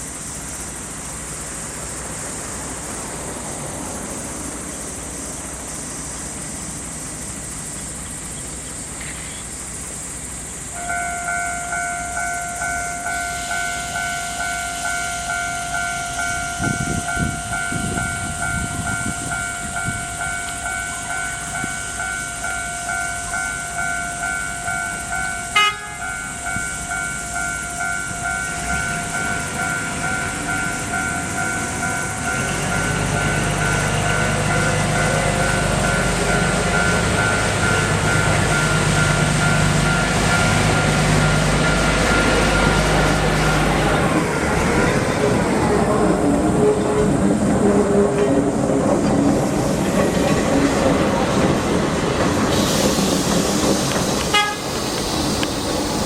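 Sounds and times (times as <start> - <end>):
electronic crossing bell dinging: 10.8 - 44.0.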